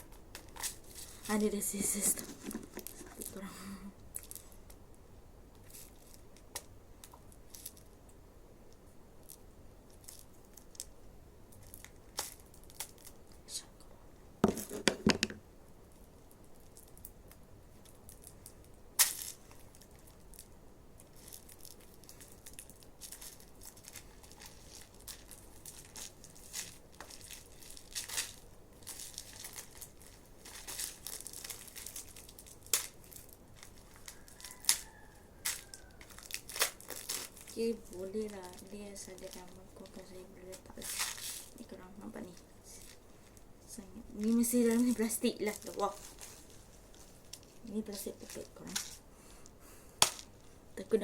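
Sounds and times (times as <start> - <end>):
plastic packaging crinkling and tearing: 0.3 - 3.4, 17.8 - 49.0.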